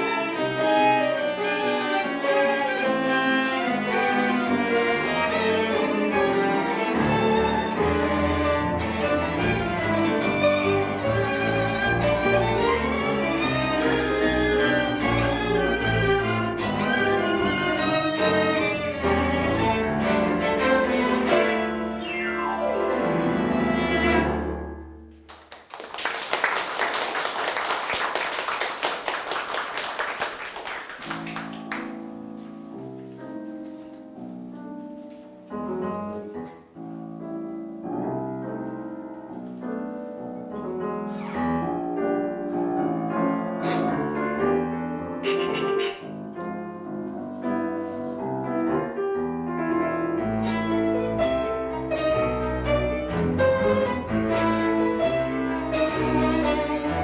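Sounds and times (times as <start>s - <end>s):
bowed strings: 0.0s - 24.9s, 43.4s - 46.3s, 49.9s - 57.0s
piano chords: 0.0s - 25.2s, 31.0s - 57.0s
noisy rush like clapping: 25.1s - 32.0s.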